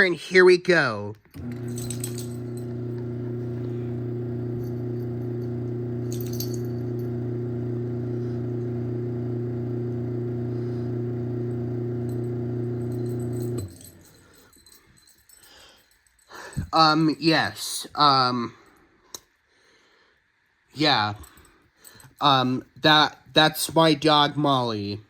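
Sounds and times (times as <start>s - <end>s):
garage door opener motor humming: 1.4s - 14.1s.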